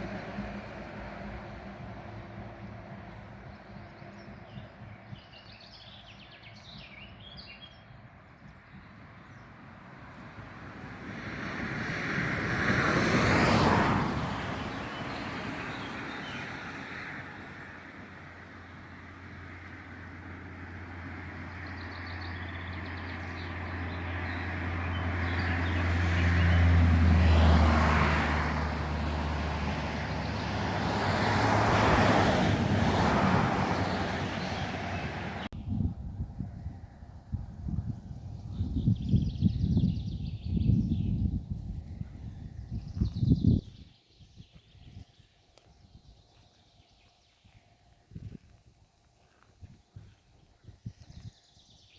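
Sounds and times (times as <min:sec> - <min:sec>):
road vehicles passing: 0:00.0 - 0:43.2.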